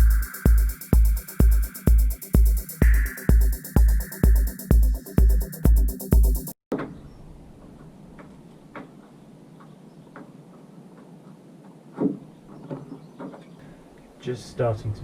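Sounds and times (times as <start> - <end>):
music: 0.0 - 6.6.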